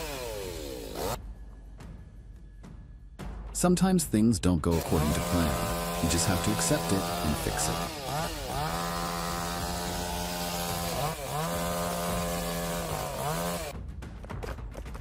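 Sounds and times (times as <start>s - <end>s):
chainsaw running at high revs: 0.0s - 1.2s, 4.7s - 13.7s.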